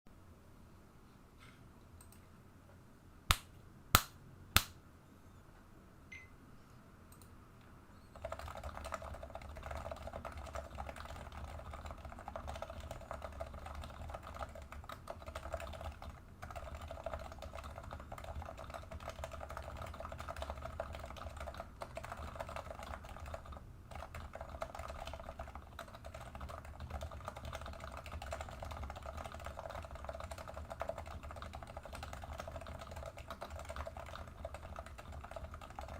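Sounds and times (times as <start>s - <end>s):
fast keyboard typing: 8.1s - 35.9s.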